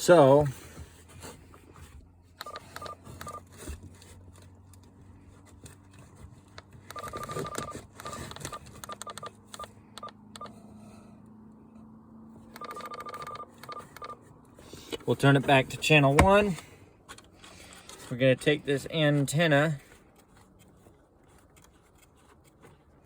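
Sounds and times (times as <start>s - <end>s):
short electronic radio beeps: 2.4s - 3.4s, 6.9s - 10.6s, 12.5s - 14.2s.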